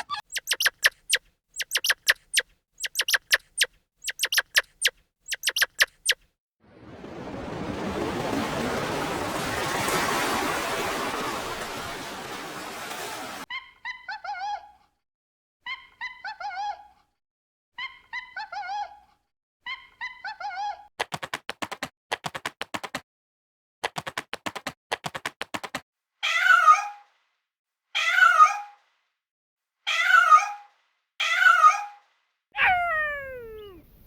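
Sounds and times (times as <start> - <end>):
cat meowing: 32.6 - 34.0.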